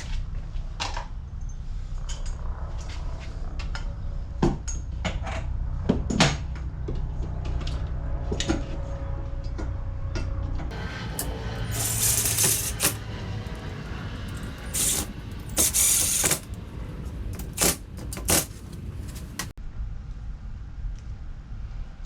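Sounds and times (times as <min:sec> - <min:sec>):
metal clinking and rattling: 0:11.0 - 0:19.5.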